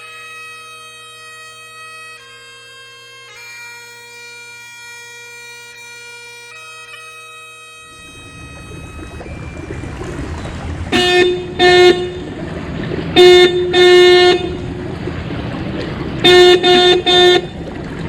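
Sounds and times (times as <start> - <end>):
horn short blasts: 10.9 - 12.4, 13.2 - 14.6, 16.2 - 17.6.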